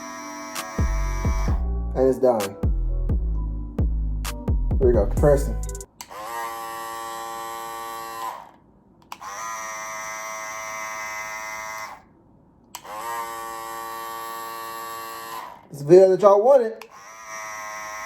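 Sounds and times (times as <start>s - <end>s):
hair clippers buzzing: 0.0s - 1.7s, 6.0s - 12.1s, 12.7s - 15.8s, 16.8s - 18.0s.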